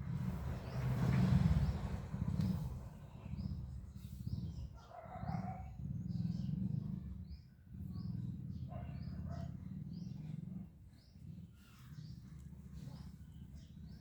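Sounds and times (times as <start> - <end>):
steady low rumble: 0.0 - 4.8
small birds chirping: 0.0 - 14.0.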